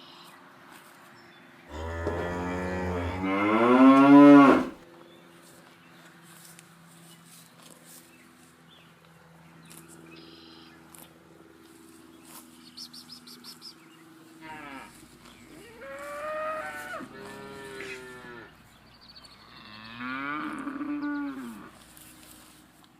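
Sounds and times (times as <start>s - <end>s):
cattle mooing: 1.7s - 4.8s.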